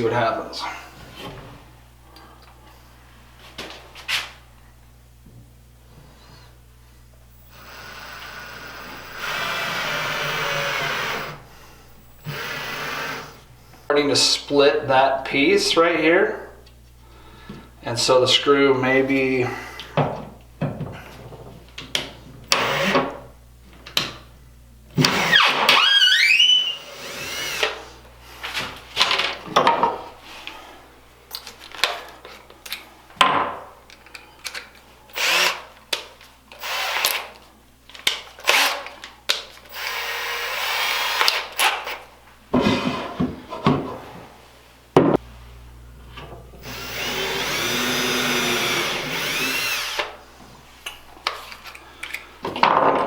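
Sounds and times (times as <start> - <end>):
power drill driving screws: 7.4 - 13.4, 22.5 - 23.0, 25.0 - 27.8, 35.2 - 35.6, 36.6 - 37.3, 38.4 - 38.8, 39.7 - 42.0, 46.6 - 50.1.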